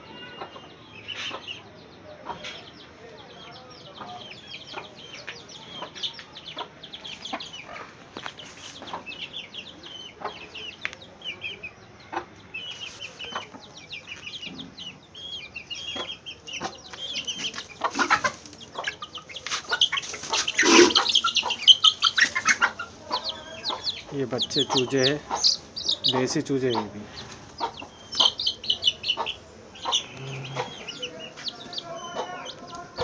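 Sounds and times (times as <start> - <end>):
chickens clucking: 0.2 - 33.0
scuffling noises: 16.9 - 26.4.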